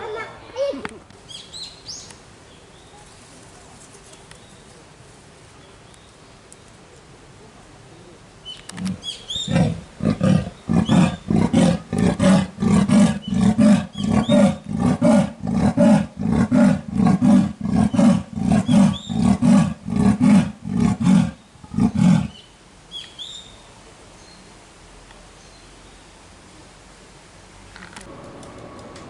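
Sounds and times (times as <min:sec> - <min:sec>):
birds chirping faintly: 0:00.0 - 0:04.8, 0:08.0 - 0:26.4
big cat grunting: 0:08.8 - 0:22.4.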